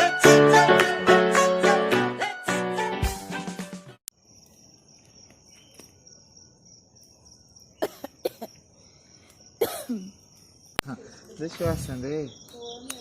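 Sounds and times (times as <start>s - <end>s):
music: 0.0s - 4.0s
cricket trilling: 4.1s - 13.0s.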